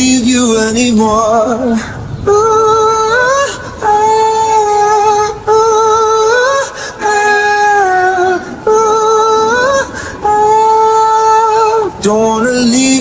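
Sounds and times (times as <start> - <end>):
high wordless singing voice: 0.0 - 13.0
singer breathing: 6.6 - 7.1, 8.4 - 8.7, 9.8 - 10.3.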